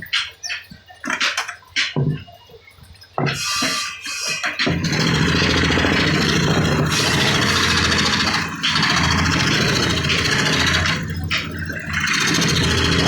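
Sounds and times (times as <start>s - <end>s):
power tool cutting wood: 3.3s - 13.0s.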